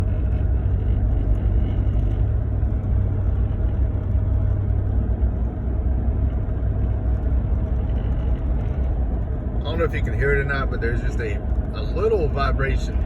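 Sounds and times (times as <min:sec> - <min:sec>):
low rumble inside truck cab: 0:00.0 - 0:13.0.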